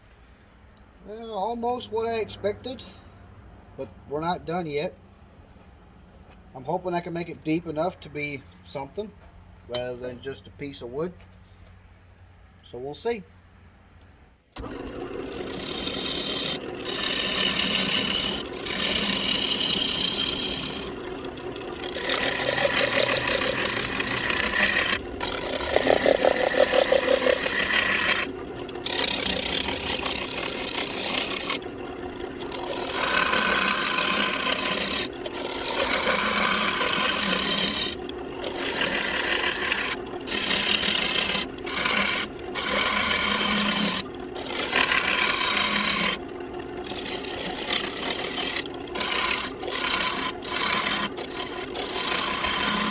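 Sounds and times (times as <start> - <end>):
turning tool cutting spinning wood: 14.6 - 52.9.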